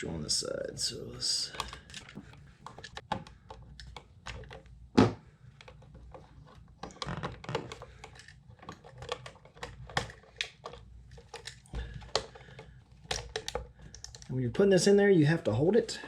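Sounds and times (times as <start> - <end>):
plastic and metal clicks: 5.6 - 14.3.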